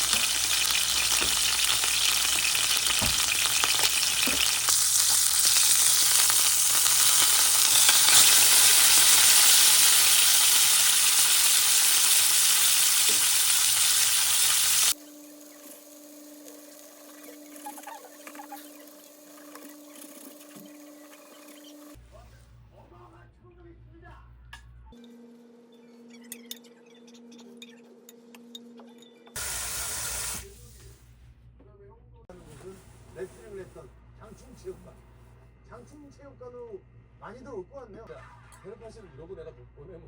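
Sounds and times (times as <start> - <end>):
meat sizzling in a pan: 0.0 - 21.9, 29.4 - 30.5.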